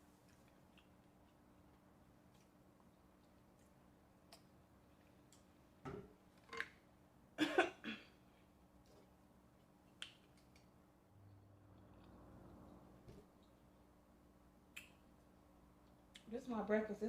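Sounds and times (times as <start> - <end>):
mouth smacks and clicks eating: 0.2 - 4.5, 9.6 - 10.7, 14.7 - 15.0.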